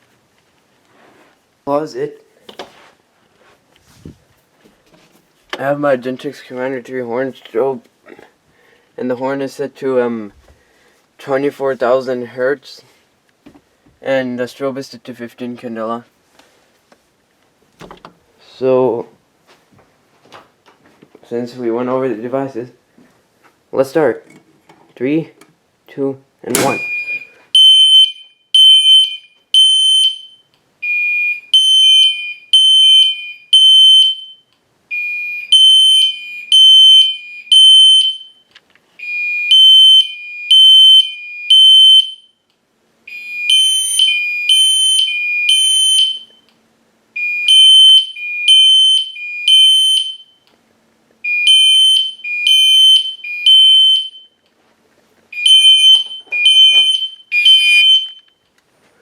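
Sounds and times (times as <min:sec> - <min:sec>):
fire alarm horns pulsing: 0:26.6 - 0:38.3, 0:39.0 - 0:42.3, 0:43.1 - 0:46.4, 0:47.2 - 0:50.4, 0:51.2 - 0:54.3, 0:55.3 - 0:58.3.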